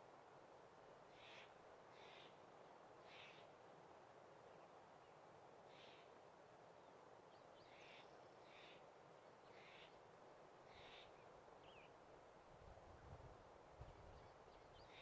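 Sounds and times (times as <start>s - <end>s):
soft background hiss: 0.0s - 15.0s
raspy bird calls: 3.1s - 3.5s, 9.5s - 10.0s, 10.7s - 11.2s.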